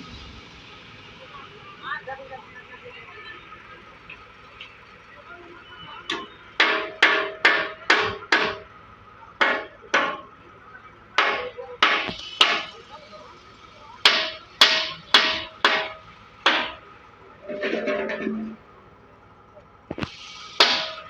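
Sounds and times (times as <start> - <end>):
hammer blows on metal: 20.6 - 21.0.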